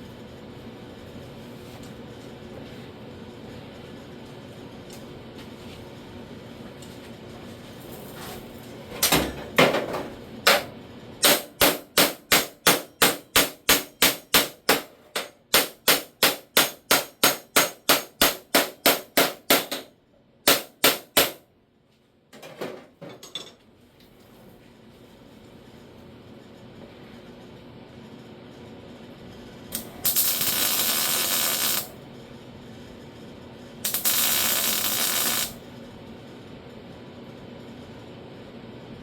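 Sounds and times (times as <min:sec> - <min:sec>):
hammer striking sheet metal: 0:10.5 - 0:21.4.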